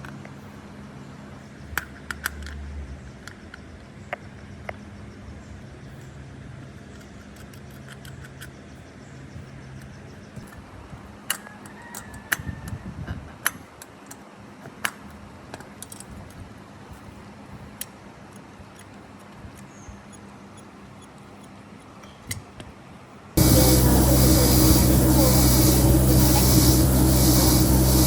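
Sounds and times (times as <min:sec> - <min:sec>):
machine humming and hissing: 0:23.4 - 0:28.0.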